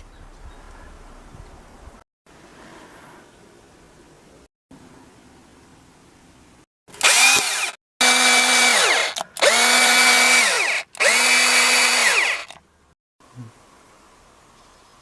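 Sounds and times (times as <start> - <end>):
electric drill motor whine: 7.0 - 12.6.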